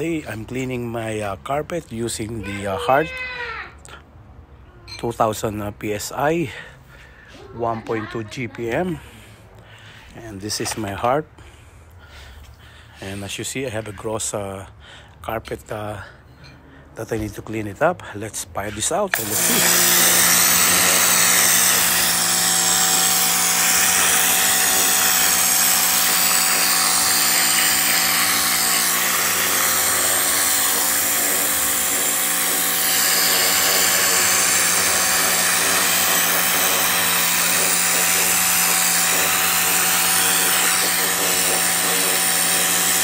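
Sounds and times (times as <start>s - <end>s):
pressure washer hum: 18.9s - 43.0s
water jet hissing on carpet: 19.2s - 43.0s.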